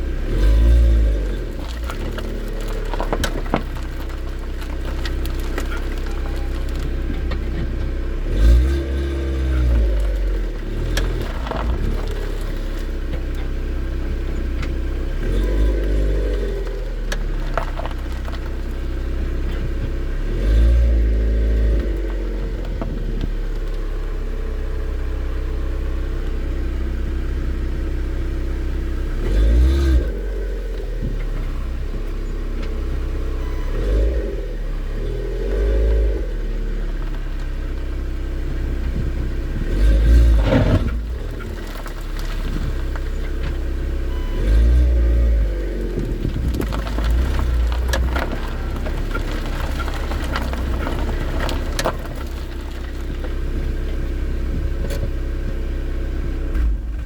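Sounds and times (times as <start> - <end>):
car engine and road noise: 0.0 - 57.0
suspension knocks: 1.2 - 8.0, 45.9 - 55.2.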